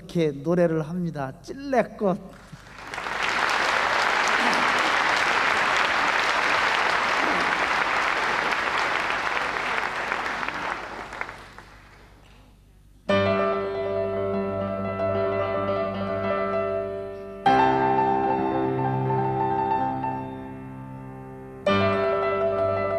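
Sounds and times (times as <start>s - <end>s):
audience applauding: 2.4s - 12.3s
piano chord: 13.1s - 22.9s.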